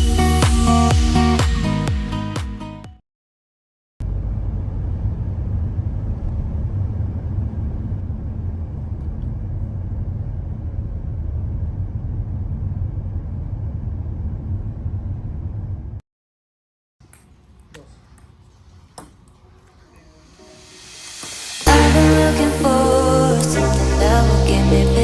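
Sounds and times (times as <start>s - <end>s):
low rumbling noise: 20.6s - 25.0s.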